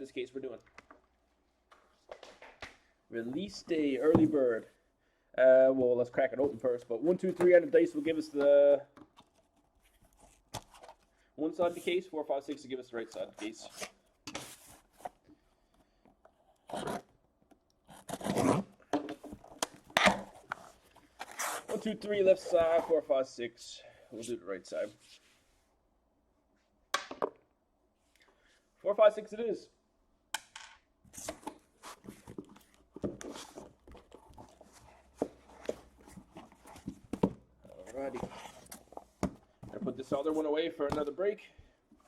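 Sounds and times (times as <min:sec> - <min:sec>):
cardboard and tape tearing: 0:17.9 - 0:18.7.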